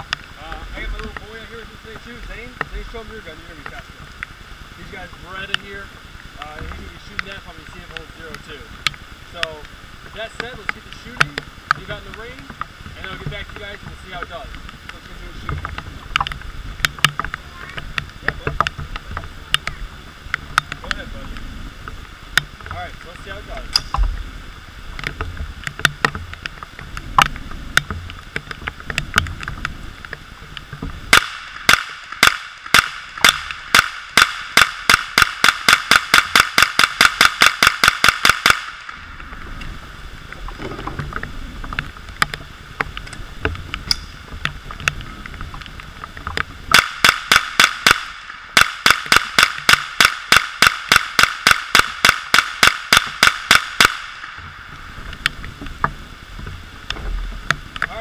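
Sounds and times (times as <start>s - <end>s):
steady rain: 0.0s - 58.0s
rifle firing rapid shots: 31.1s - 38.8s, 46.7s - 54.1s.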